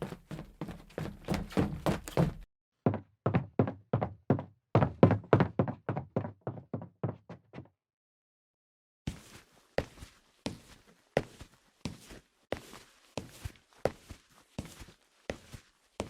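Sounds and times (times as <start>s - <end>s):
footsteps on wooden floor: 0.0s - 7.7s.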